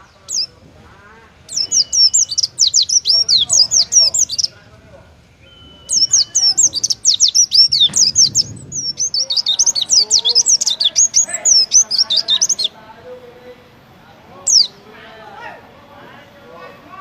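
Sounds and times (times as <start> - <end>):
bird chirping rapidly: 0.0 - 0.6, 1.4 - 12.8, 14.4 - 14.9.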